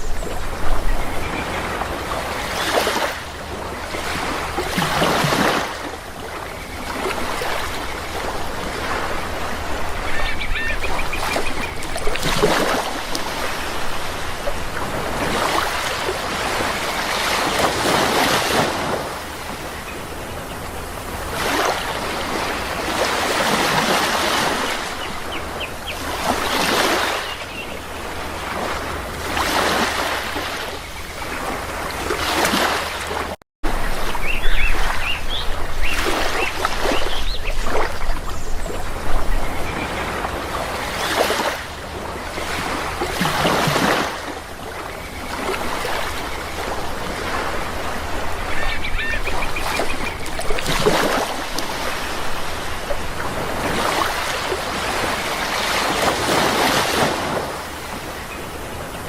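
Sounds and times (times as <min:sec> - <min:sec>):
bird calls: 0:00.0 - 0:03.2, 0:05.0 - 0:13.8, 0:19.4 - 0:28.3, 0:33.9 - 0:42.8, 0:44.8 - 0:53.9
sea waves washing in: 0:00.0 - 0:59.0.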